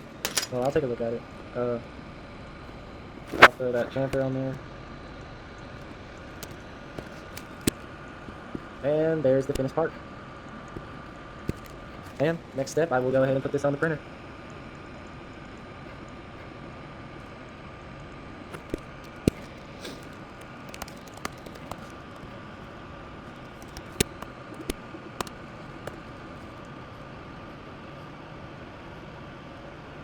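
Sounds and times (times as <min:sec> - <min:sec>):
faint hum: 0:00.0 - 0:30.0
sharp clicks: 0:06.2 - 0:07.8, 0:18.5 - 0:22.4, 0:23.3 - 0:26.5.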